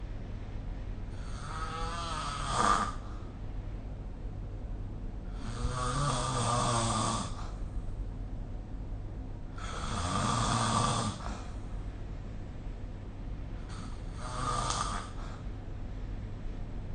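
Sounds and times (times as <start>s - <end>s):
person snoring: 1.1s - 3.0s, 5.3s - 7.6s, 9.6s - 11.6s, 13.7s - 15.4s.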